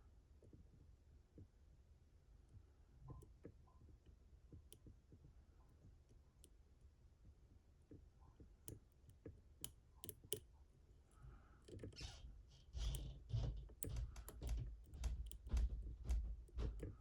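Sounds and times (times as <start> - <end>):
lock picks clicking in a lock: 9.6 - 10.4
low handling bumps: 12.8 - 17.0.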